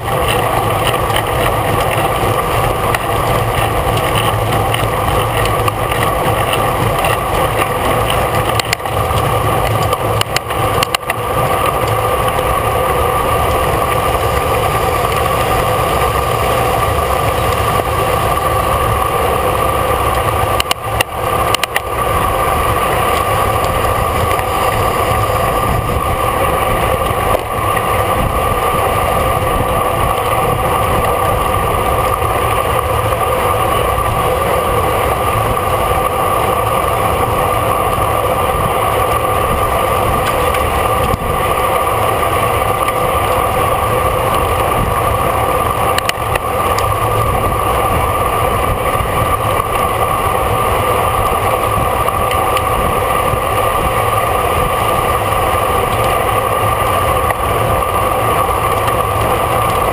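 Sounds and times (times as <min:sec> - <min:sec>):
bicycle tyre noise: 0:00.0 - 0:59.9
steady hum: 0:00.0 - 0:59.9
wind rushing: 0:01.6 - 0:33.1.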